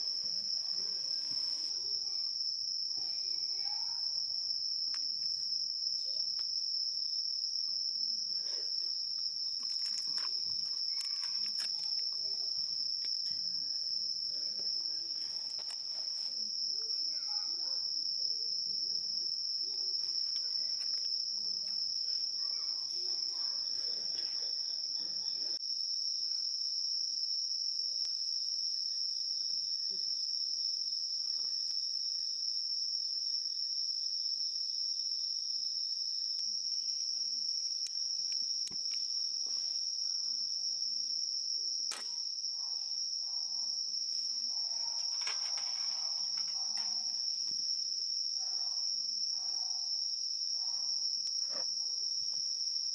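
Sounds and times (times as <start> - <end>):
insects trilling: 0.0 - 52.9
sharp click: 41.9 - 42.2.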